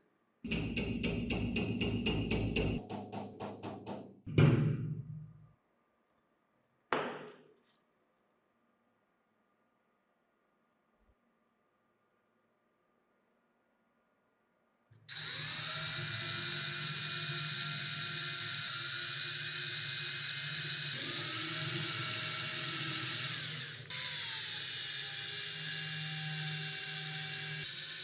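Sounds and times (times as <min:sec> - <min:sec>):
angle grinder whining: 0:15.1 - 0:28.0.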